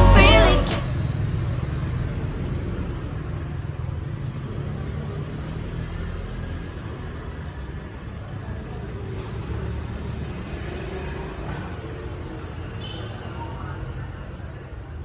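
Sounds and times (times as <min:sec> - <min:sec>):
background song: 0:00.0 - 0:01.1.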